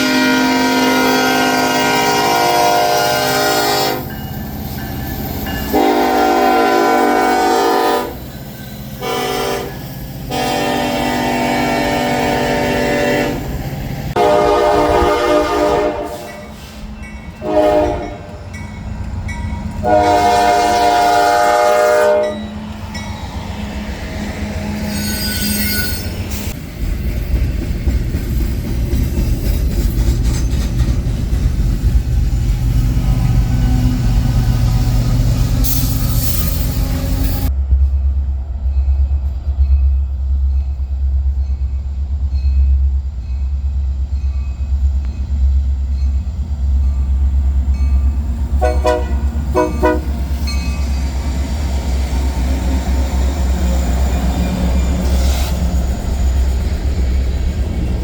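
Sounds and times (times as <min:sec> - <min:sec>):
locomotive air horn blasts: 0:00.0 - 0:04.1, 0:05.7 - 0:08.2, 0:09.0 - 0:13.5, 0:14.2 - 0:18.4, 0:19.8 - 0:22.4, 0:48.6 - 0:50.2
passing train rumble: 0:00.0 - 0:58.0.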